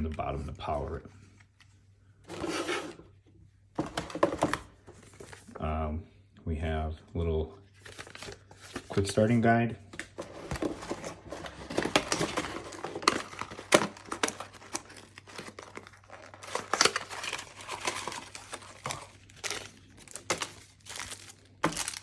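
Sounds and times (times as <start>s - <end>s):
packaging crinkling: 10.0s - 22.0s.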